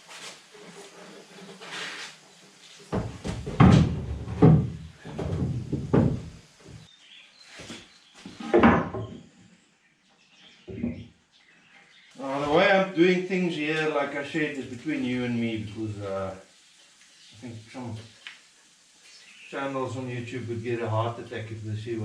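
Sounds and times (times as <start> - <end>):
heavy knocks and thuds: 2.9 - 6.8.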